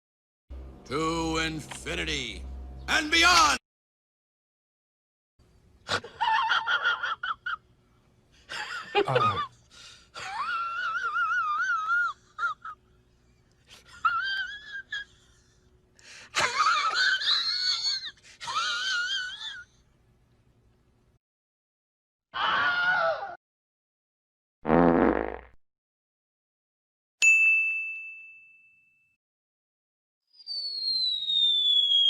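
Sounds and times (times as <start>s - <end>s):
faint steady hum: 5.4s - 21.2s.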